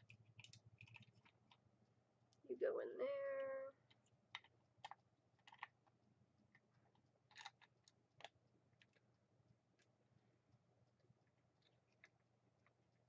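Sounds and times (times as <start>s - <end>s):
plastic toy parts clicking: 0.0s - 1.6s, 3.9s - 5.9s, 7.3s - 9.0s.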